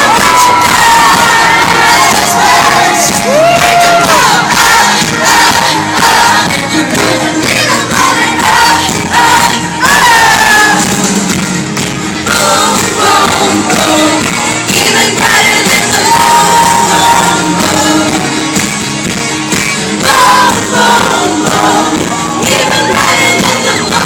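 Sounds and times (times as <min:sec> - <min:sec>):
crowd shouting: 0:00.0 - 0:11.1, 0:14.8 - 0:18.4, 0:20.0 - 0:24.0
crowd singing along: 0:00.0 - 0:24.0
live pop music: 0:00.0 - 0:24.0.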